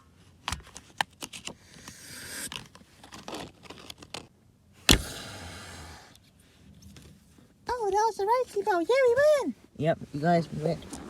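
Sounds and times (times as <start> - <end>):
seatbelt webbing sliding: 4.8 - 6.0.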